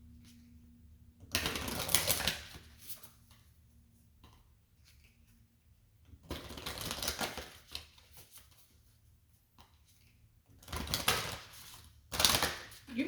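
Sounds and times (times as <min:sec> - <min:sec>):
cards being riffle shuffled: 0:01.3 - 0:03.4, 0:06.2 - 0:09.0, 0:09.6 - 0:12.9.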